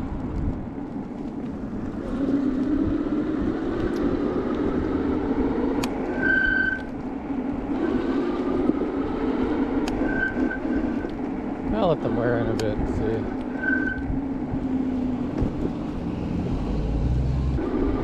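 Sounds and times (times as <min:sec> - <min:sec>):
wind and tyre noise: 0:00.0 - 0:18.0
disc brakes squealing: 0:06.1 - 0:07.0, 0:10.0 - 0:11.2, 0:13.4 - 0:14.2.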